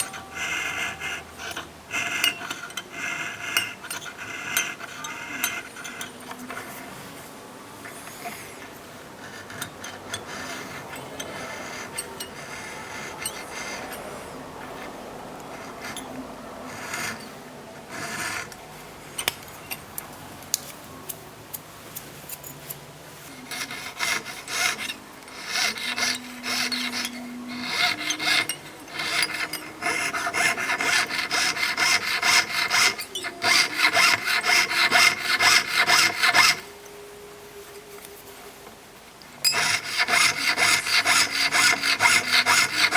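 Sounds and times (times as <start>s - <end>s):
fine saw cutting metal sheet: 0.0s - 6.9s, 7.8s - 14.9s, 23.3s - 36.8s, 39.5s - 42.9s.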